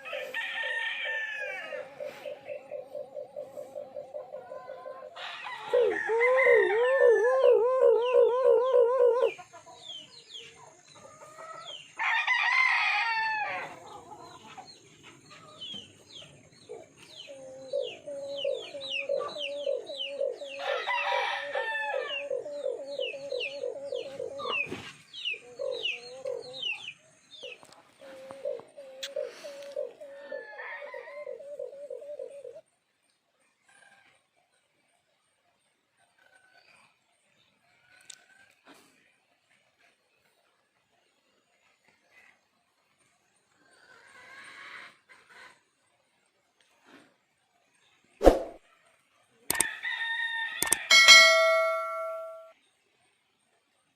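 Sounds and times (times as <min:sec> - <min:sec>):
rooster crowing: 0:00.0 - 0:02.2, 0:05.1 - 0:09.4, 0:12.0 - 0:13.8, 0:20.6 - 0:22.4, 0:30.2 - 0:31.7, 0:49.5 - 0:52.4
dove cooing rapidly: 0:01.6 - 0:09.4, 0:17.3 - 0:20.6, 0:21.5 - 0:24.6, 0:28.1 - 0:32.6
small birds chirping: 0:22.1 - 0:30.1.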